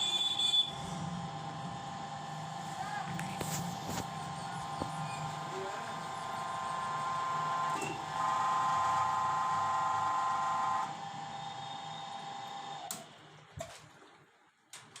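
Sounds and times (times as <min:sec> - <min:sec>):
machine motor whining: 0:00.7 - 0:13.0.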